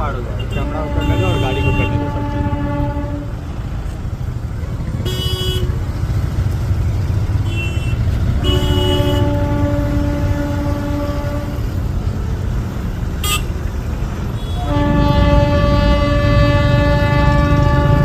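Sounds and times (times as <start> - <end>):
horn blasts: 0.0 - 4.0, 5.0 - 5.8, 7.4 - 11.9, 13.2 - 13.6, 14.3 - 18.0
low engine rumble: 0.0 - 18.0.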